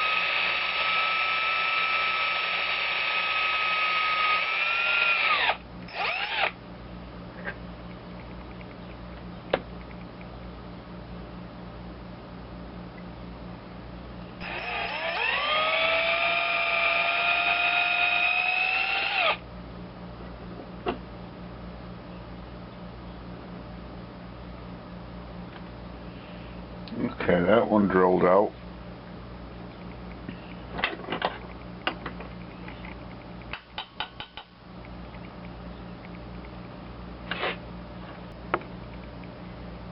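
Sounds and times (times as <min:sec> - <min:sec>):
rotary power tool whine: 0:00.0 - 0:06.6, 0:14.4 - 0:19.4
steady low hum: 0:00.0 - 0:39.9.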